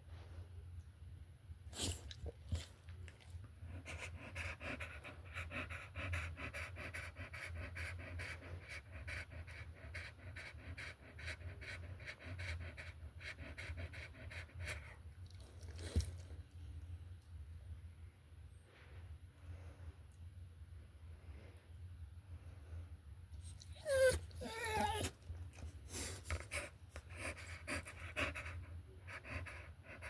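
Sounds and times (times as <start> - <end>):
rapid rhythmic panting: 3.6 - 15.0, 25.8 - 30.0.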